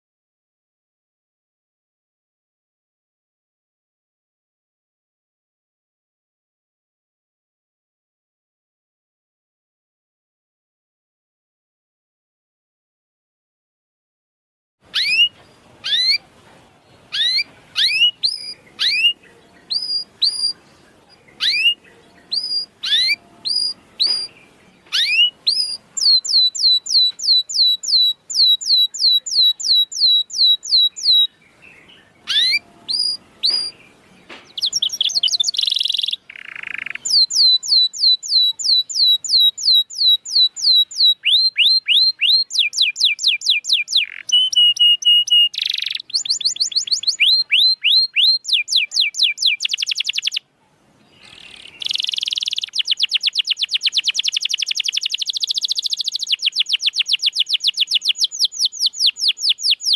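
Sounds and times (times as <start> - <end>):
canary singing trills: 14.8 - 59.9.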